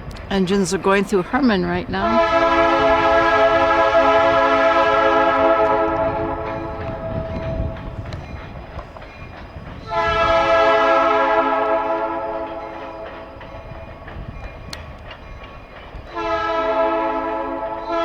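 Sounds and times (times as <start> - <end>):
train low rumble: 0.0 - 18.0
locomotive air horn blasts: 2.0 - 7.8, 9.9 - 12.8, 16.1 - 18.0.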